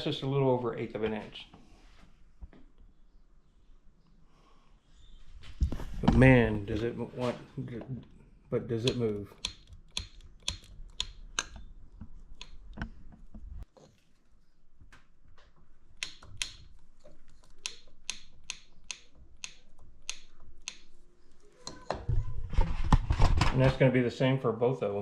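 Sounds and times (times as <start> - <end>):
piston knocking metal clicks: 8.8 - 12.9.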